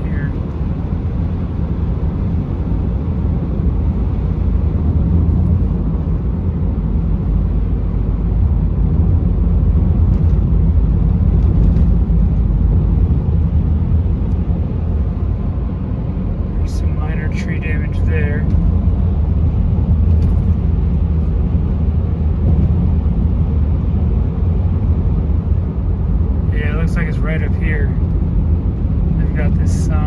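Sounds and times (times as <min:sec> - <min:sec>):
car road and engine rumble: 0:00.0 - 0:30.0.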